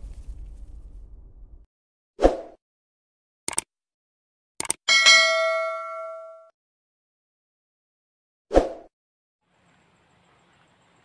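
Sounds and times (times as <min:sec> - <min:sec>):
double click: 0:03.5 - 0:03.7, 0:04.6 - 0:04.8
bell-like ding: 0:04.9 - 0:06.5.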